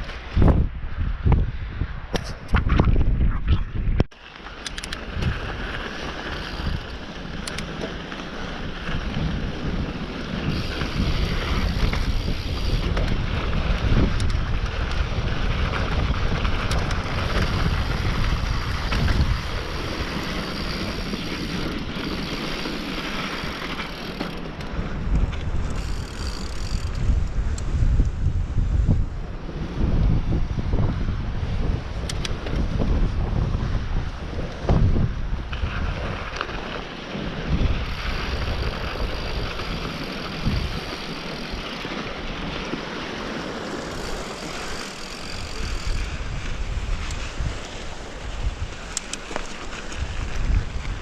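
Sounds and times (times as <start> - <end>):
bike clicks and rattles: 0.0 - 0.6, 2.1 - 28.2, 32.0 - 33.3, 34.2 - 48.0, 48.6 - 51.0
wind buffeting microphone: 0.0 - 51.0
tyres rumbling over dirt: 4.2 - 27.2, 34.7 - 47.5.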